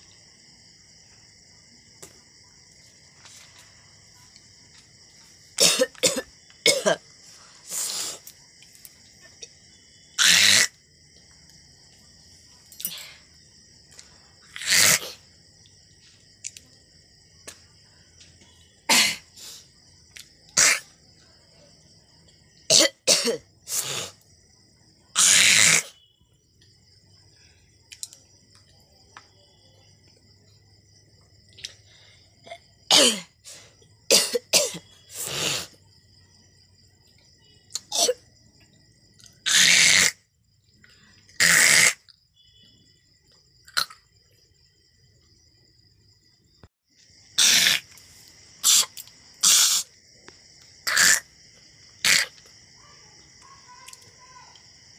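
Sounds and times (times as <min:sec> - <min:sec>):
person coughing: 0:05.6 - 0:07.0, 0:22.7 - 0:23.4, 0:32.5 - 0:33.3, 0:34.1 - 0:34.8.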